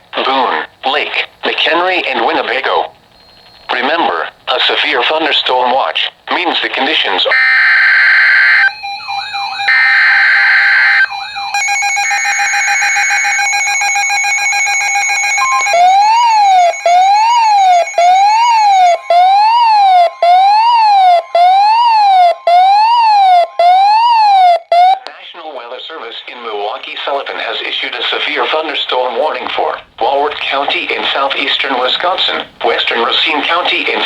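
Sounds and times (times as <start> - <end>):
screeching digital data bursts: 7.3 - 25.0
siren-like warble: 7.3 - 25.1
steady warning alarm tone: 7.3 - 25.1
steady alert tone: 8.4 - 25.0.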